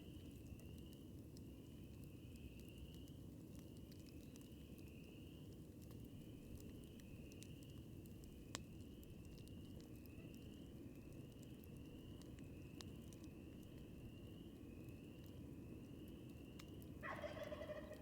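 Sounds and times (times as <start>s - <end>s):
campfire crackling: 0.0s - 18.0s.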